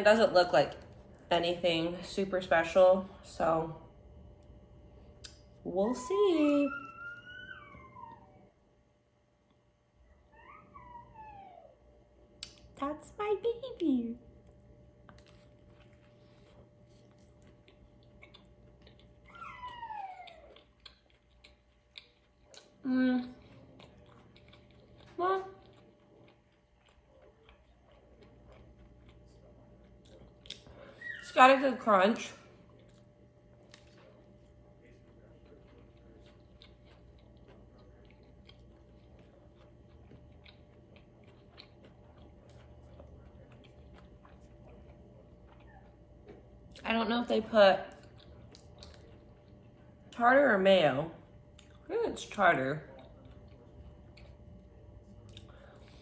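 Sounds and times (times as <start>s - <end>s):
pet's long descending cry: 6.7s - 8.4s
chewing crunchy sandwich: 14.3s - 31.1s, 32.4s - 46.8s, 47.9s - 50.2s, 51.2s - 51.9s, 52.8s - 56.0s.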